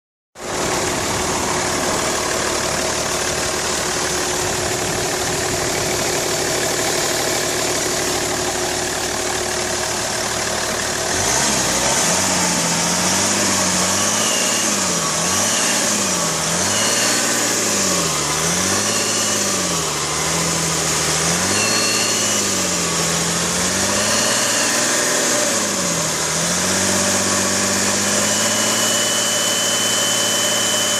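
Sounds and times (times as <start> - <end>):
diesel engine revving: 0.4 - 30.9
high whistle: 14.1 - 14.9, 21.5 - 22.6, 28.3 - 30.9.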